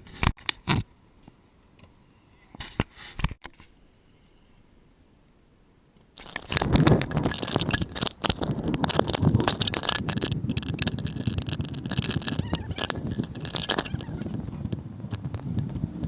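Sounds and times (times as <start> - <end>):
scooter deck and bars rattling: 6.2 - 16.0
scooter wheels rolling on concrete: 6.2 - 16.0.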